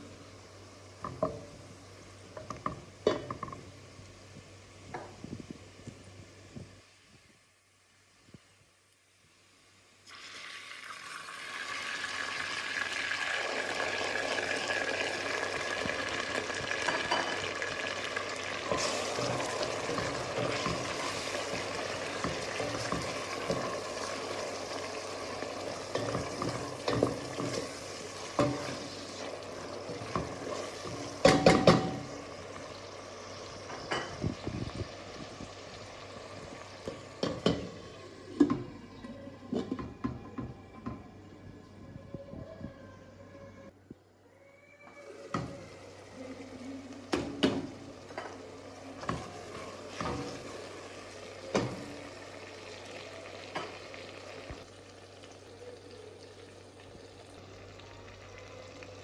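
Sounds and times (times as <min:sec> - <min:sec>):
food sizzling in a pan: 0:00.0 - 0:38.4, 0:45.0 - 0:59.0.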